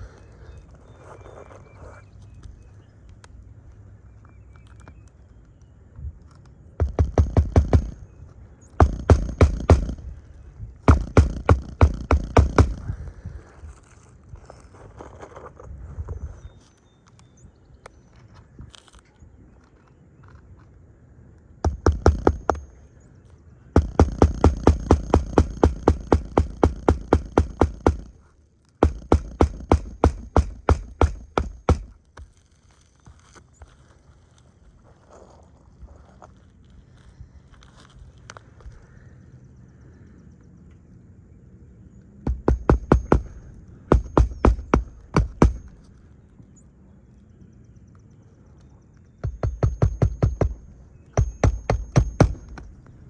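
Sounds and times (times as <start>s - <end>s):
hammer driving nails into shingles: 6.8s - 8.0s, 8.8s - 10.2s, 10.8s - 13.1s, 21.6s - 22.8s, 23.8s - 32.4s, 42.3s - 45.8s, 49.2s - 52.8s.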